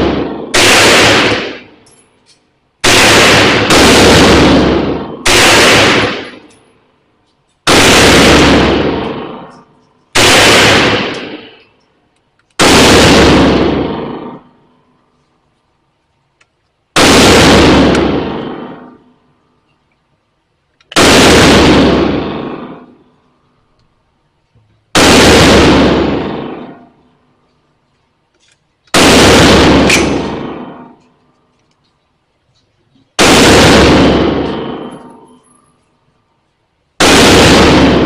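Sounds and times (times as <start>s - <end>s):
gunshots with echo: 0.0s - 1.8s, 2.8s - 6.6s, 7.6s - 11.8s, 12.6s - 14.6s, 17.0s - 19.1s, 20.9s - 23.1s, 24.9s - 27.0s, 29.0s - 31.0s, 33.2s - 35.3s, 37.0s - 38.0s.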